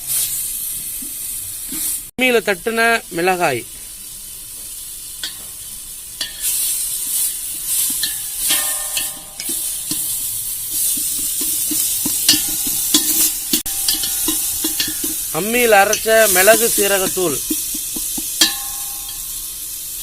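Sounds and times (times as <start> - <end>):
food sizzling in a pot: 0.0 - 20.0
ladle knocking and scraping pot: 6.2 - 19.5
metallic ring: 7.7 - 16.8, 17.4 - 19.8.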